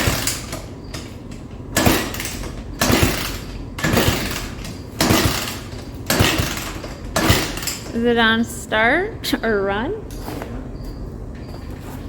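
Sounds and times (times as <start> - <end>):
engine being kick-started: 0.0 - 8.2.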